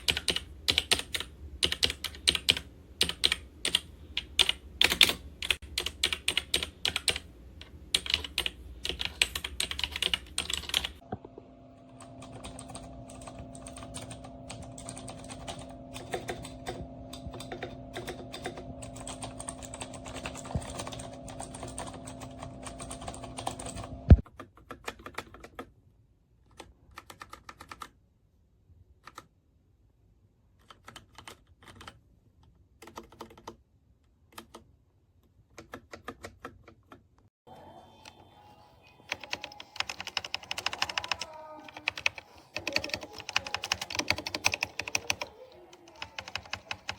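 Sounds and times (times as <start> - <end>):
mechanical keyboard typing: 0.0 - 11.0, 11.9 - 25.7, 26.5 - 28.0, 30.6 - 32.0, 32.8 - 33.6, 34.3 - 34.7, 35.5 - 37.0, 39.1 - 46.9
steady hum: 0.0 - 24.2.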